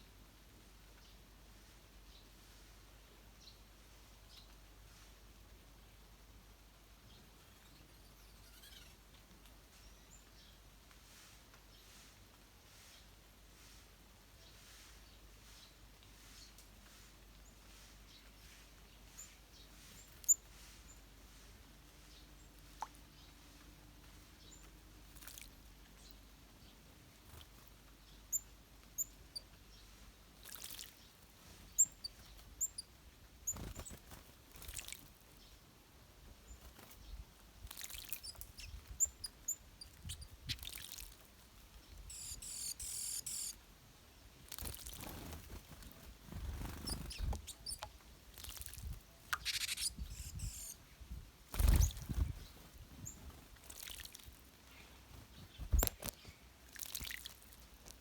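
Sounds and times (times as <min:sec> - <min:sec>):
birds splashing and flapping: 0:25.0 - 0:25.6, 0:30.4 - 0:31.0, 0:33.5 - 0:35.2, 0:37.6 - 0:38.6, 0:44.4 - 0:49.9, 0:51.5 - 0:54.4, 0:55.2 - 0:57.6
high bird chirps: 0:31.7 - 0:32.9, 0:38.1 - 0:40.8, 0:42.0 - 0:43.6, 0:46.3 - 0:47.9, 0:49.4 - 0:50.8.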